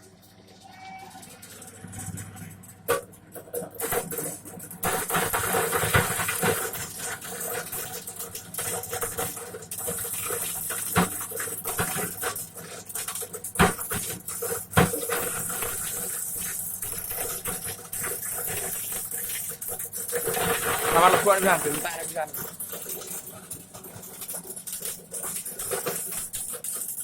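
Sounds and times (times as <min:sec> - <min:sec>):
machine hum: 0:00.0 - 0:05.0
corn rattling through sheller: 0:00.0 - 0:27.0.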